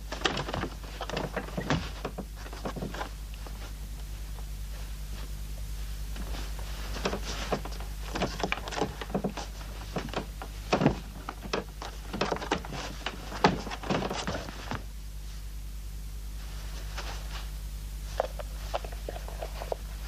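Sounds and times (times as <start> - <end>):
steady low hum: 0.0 - 20.0
clicks knocks and clatters: 7.0 - 14.8.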